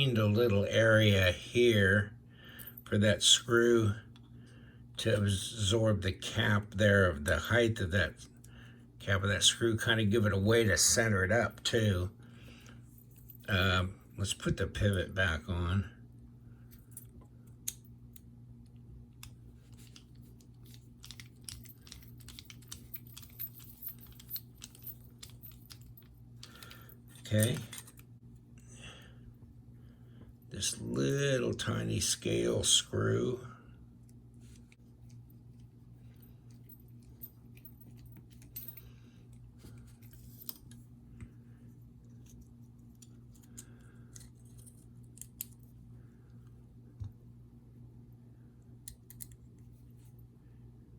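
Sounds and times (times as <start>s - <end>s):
steady low hum: 0.0s - 50.9s
small metal parts clicking: 19.2s - 28.1s, 48.9s - 49.4s.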